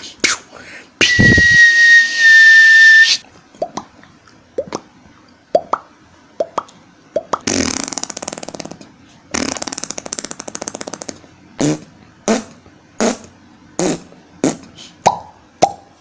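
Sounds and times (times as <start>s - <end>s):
mouth-made pops: 5.6s - 8.8s.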